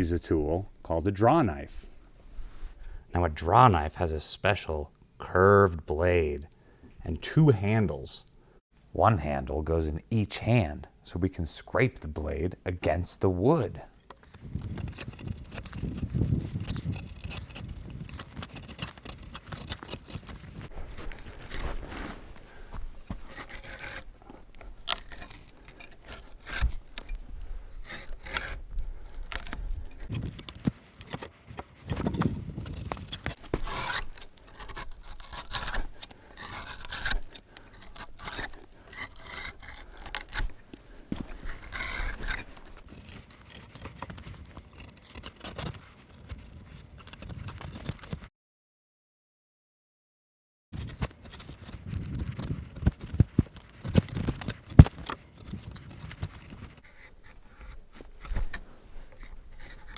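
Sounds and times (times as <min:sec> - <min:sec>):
drawknife scraping bark off log: 0:14.2 - 0:48.3, 0:50.8 - 0:59.9.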